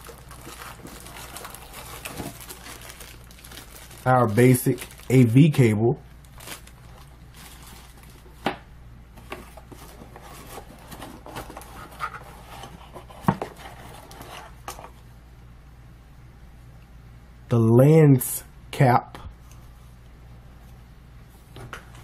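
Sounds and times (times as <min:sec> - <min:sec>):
packaging rustling: 0:00.0 - 0:05.4, 0:06.2 - 0:08.4, 0:09.2 - 0:14.9.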